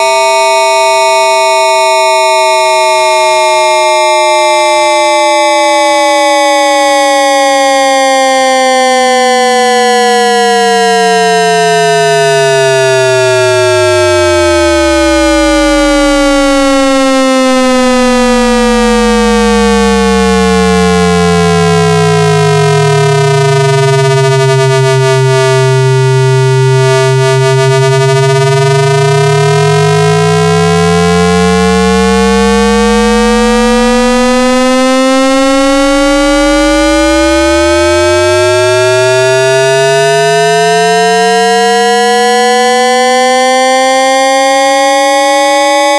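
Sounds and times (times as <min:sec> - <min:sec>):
buzzy electronic whistle gliding: 0:12.2 - 0:40.3.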